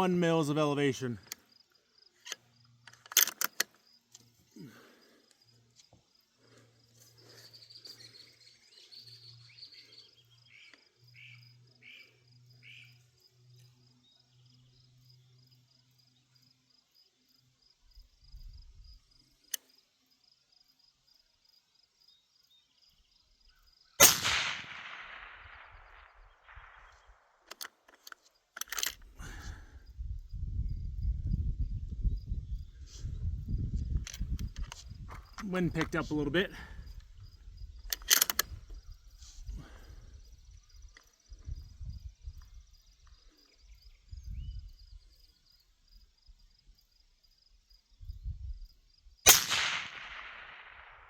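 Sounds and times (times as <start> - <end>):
insects buzzing: 0.0 - 51.0
sharp clicks: 2.2 - 4.2, 24.0 - 29.1, 37.8 - 38.6
bird chirping: 7.2 - 15.6
rifle shot: 24.0 - 27.2, 49.3 - 51.0.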